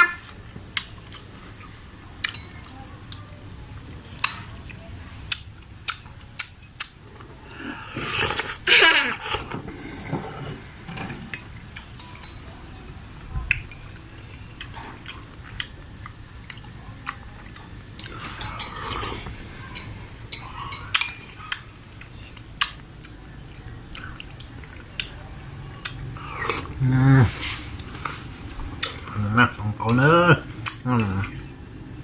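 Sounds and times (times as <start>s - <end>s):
person chewing: 0.7s - 3.2s, 4.2s - 9.6s, 14.3s - 31.5s.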